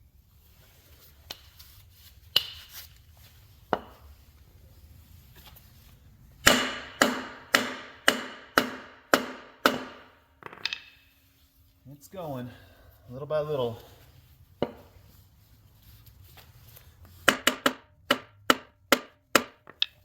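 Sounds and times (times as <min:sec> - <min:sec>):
hammer striking wood block: 0:06.4 - 0:11.0, 0:14.6 - 0:14.9, 0:17.3 - 0:20.0.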